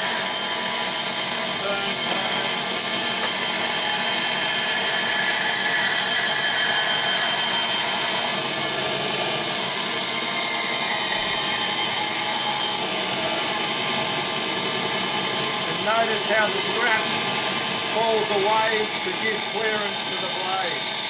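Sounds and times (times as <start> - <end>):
bandsaw cutting wood: 0.0 - 21.0.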